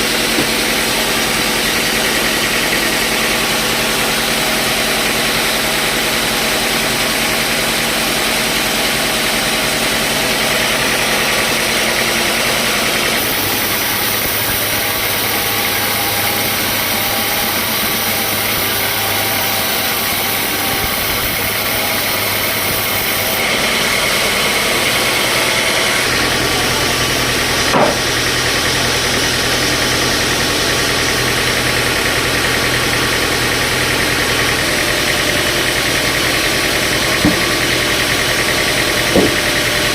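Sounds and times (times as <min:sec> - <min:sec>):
sawmill machinery droning: 0:00.0 - 0:39.9
sharp knock: 0:27.7 - 0:28.1, 0:37.2 - 0:37.6, 0:39.1 - 0:39.4.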